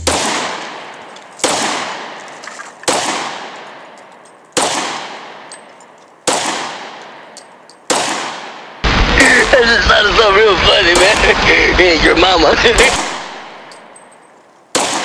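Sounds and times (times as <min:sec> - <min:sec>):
pistol shots with echo: 0:00.0 - 0:10.0, 0:14.7 - 0:15.0.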